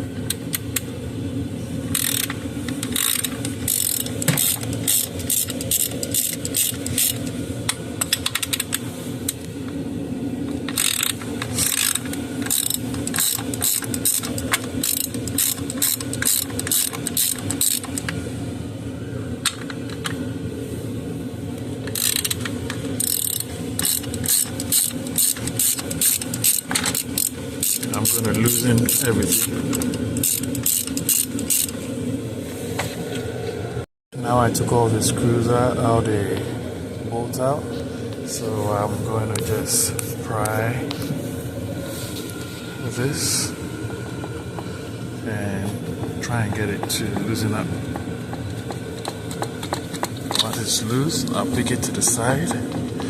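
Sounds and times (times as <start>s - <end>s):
steady low hum: 0.0s - 53.0s
hand ratchet clicking: 1.9s - 9.4s, 10.7s - 18.2s, 21.9s - 31.8s.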